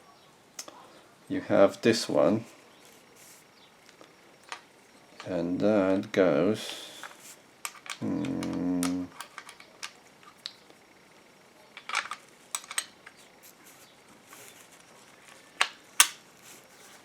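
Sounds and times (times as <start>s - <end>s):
small plastic parts clicking: 7.0s - 10.7s, 11.7s - 16.6s.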